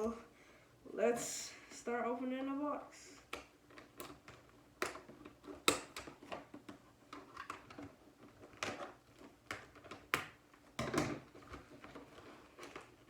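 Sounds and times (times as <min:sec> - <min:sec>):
box handled taps and clicks: 0:03.2 - 0:11.3.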